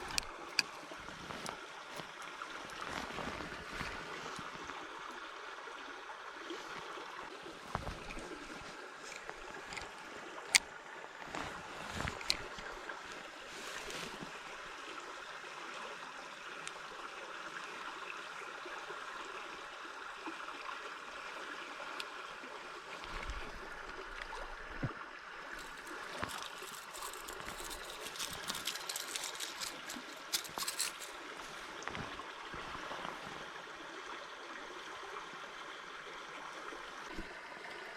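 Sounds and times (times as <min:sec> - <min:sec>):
light clicks and ticks: 0:00.0 - 0:03.1, 0:25.6 - 0:31.2
river flowing and trickling: 0:00.0 - 0:37.9.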